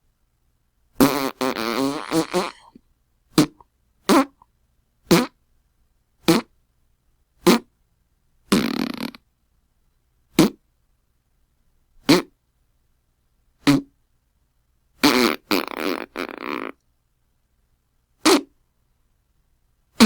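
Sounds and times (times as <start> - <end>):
fart sound effects: 1.0 - 2.8, 6.3 - 6.5, 7.4 - 7.7, 8.5 - 9.2, 10.4 - 10.6, 12.1 - 12.3, 13.6 - 13.9, 15.0 - 16.8, 18.2 - 18.5.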